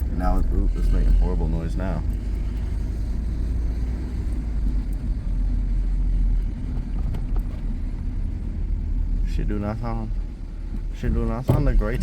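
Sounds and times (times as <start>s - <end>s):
car engine rumbling with knock: 0.0s - 12.0s.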